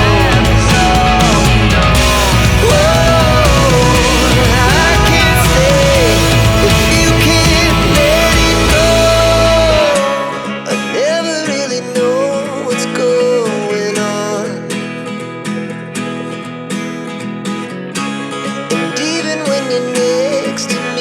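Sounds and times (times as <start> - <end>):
deep bass: 0.0 - 10.0
pop song: 0.0 - 15.1, 18.6 - 21.0
acoustic guitar strumming: 0.0 - 21.0.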